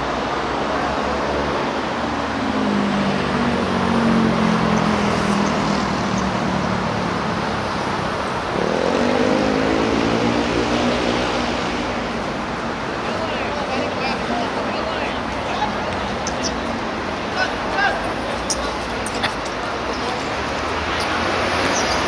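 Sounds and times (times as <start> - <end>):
road traffic: 0.0 - 22.0
vehicle engine accelerating: 2.6 - 13.0.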